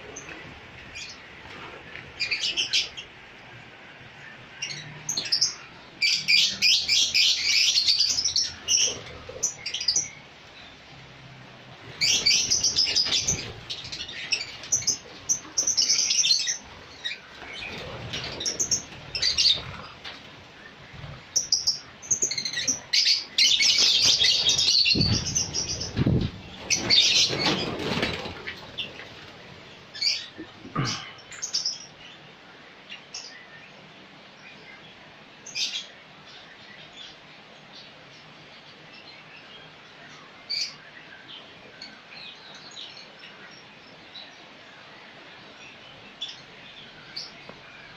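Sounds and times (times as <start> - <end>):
songbird chirping and trilling: 0.0 - 11.1, 11.8 - 47.9.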